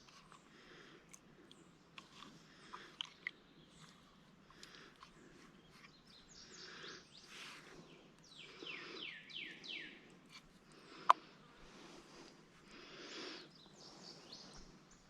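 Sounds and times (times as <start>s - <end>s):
outdoor background noise: 0.0s - 15.0s
songbird whistling: 8.3s - 10.0s.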